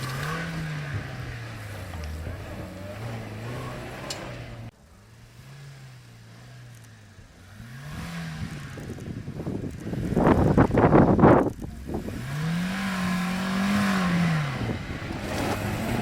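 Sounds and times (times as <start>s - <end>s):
off-road vehicle engine revving: 0.0s - 16.0s.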